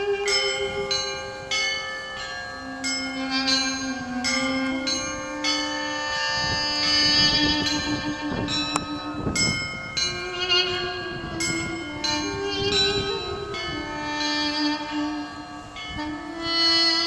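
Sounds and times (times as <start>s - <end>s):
church bells pealing: 0.0s - 17.0s
duduk holding long notes: 0.0s - 17.0s.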